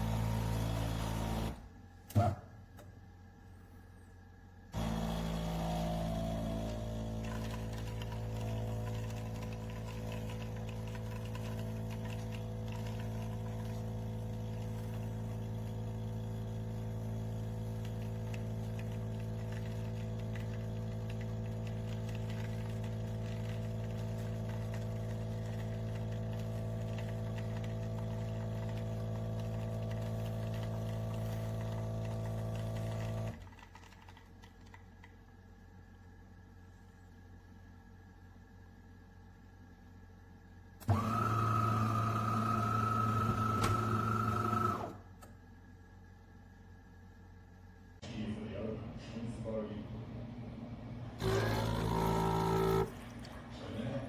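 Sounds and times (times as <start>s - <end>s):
machine hum with buzzing rattle: 0.0s - 54.0s.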